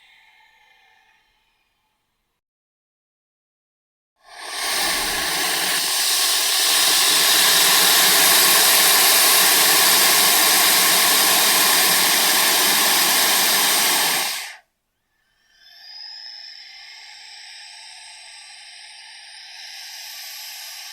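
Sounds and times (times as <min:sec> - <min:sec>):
snake hissing: 0:04.2 - 0:14.6, 0:15.6 - 0:20.9.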